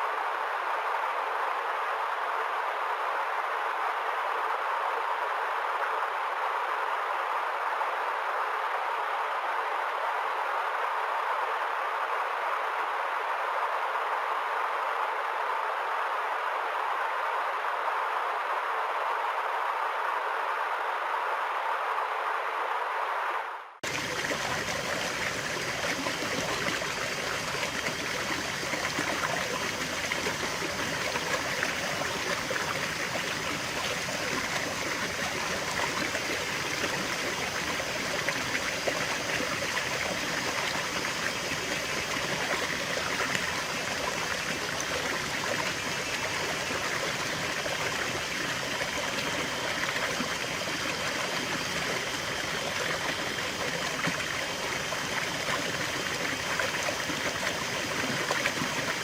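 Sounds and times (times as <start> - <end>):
water rushing over rocks: 23.8 - 59.0.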